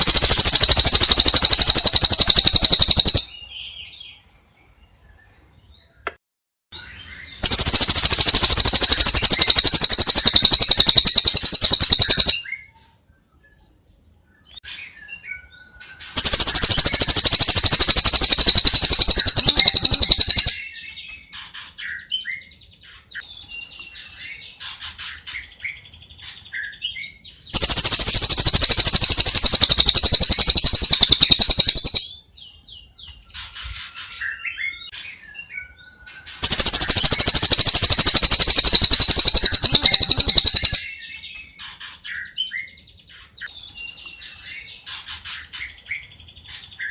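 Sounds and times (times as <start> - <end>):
high-pitched bird trills: 0.0 - 3.5, 6.8 - 12.7, 15.4 - 21.7, 27.5 - 32.3, 33.3 - 42.8
bird chirps and whistles: 0.0 - 4.0, 6.8 - 12.7, 15.0 - 21.0, 26.5 - 32.2, 33.8 - 41.5.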